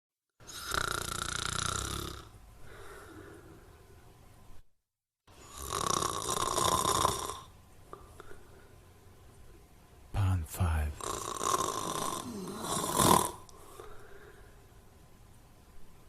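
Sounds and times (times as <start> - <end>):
person snoring: 0.5 - 2.3, 5.4 - 7.5, 10.6 - 13.4.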